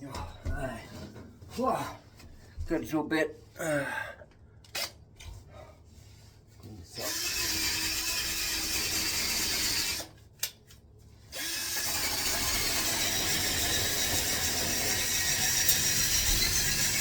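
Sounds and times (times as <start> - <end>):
power tool rattly whirr: 7.0 - 10.2, 11.3 - 17.0.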